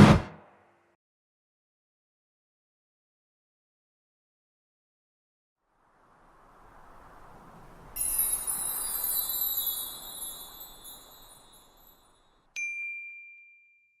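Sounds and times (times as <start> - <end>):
shimmering high chimes: 8.0 - 13.8.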